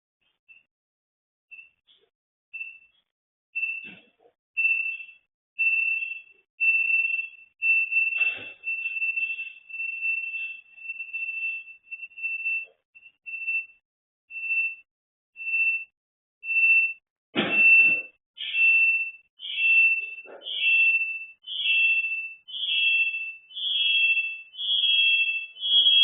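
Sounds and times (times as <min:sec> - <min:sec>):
electronic alarm beeping: 0:01.5 - 0:26.0.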